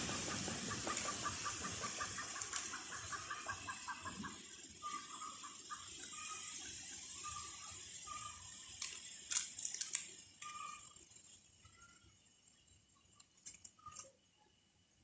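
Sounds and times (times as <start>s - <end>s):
chickens clucking: 0.0s - 8.5s
steady high hiss: 0.0s - 15.0s.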